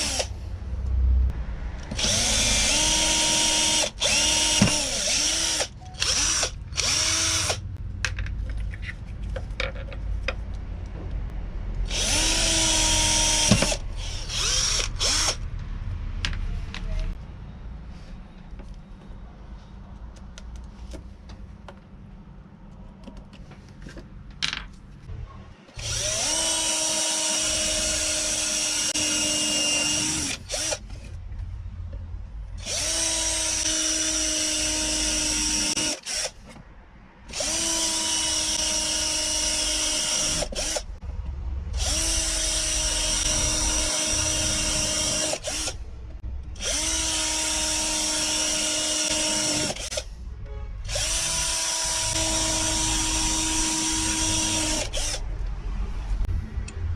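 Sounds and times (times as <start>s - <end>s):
power tool motor running: 0.0s - 0.3s, 1.9s - 7.6s, 11.9s - 15.4s, 25.8s - 30.8s, 37.3s - 40.9s, 41.8s - 45.8s, 46.6s - 50.1s, 50.9s - 55.2s.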